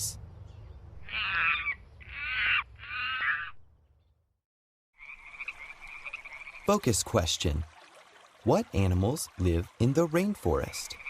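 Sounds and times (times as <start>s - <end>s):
bird giving harsh caws: 1.0s - 3.6s.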